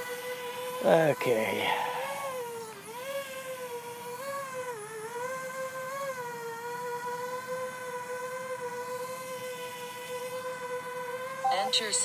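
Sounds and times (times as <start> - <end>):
drone propellers whining: 0.6 - 2.8, 11.4 - 12.0.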